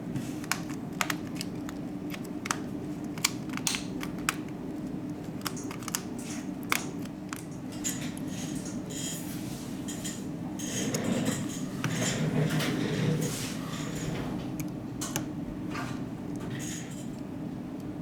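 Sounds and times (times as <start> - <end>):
tools and parts clicking: 0.4 - 8.2.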